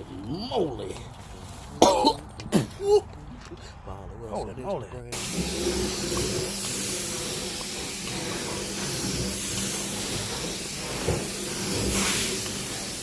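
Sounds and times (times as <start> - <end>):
carpet-cleaning machine running: 5.2 - 13.0.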